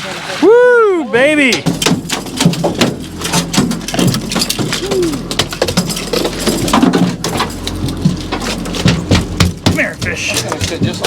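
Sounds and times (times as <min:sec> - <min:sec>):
boat engine humming: 0:00.0 - 0:11.0
fish flopping on boat deck: 0:01.2 - 0:11.0.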